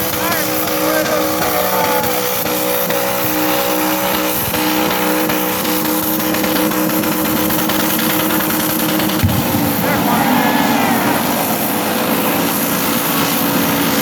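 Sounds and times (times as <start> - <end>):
car engine running: 0.0 - 14.0
constant loud din: 0.0 - 14.0.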